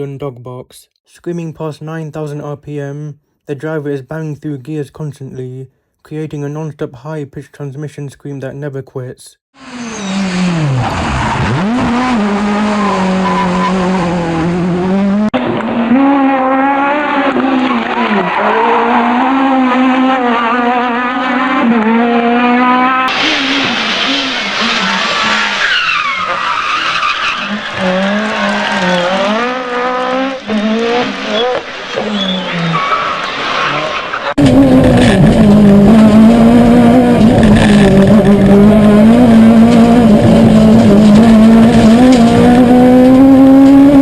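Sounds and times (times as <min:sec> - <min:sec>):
rally car engine screaming: 0:09.6 - 0:44.0.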